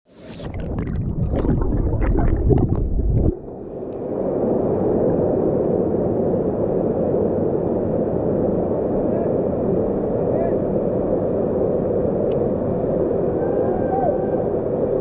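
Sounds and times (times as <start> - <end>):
low rumble: 0.4 - 3.8.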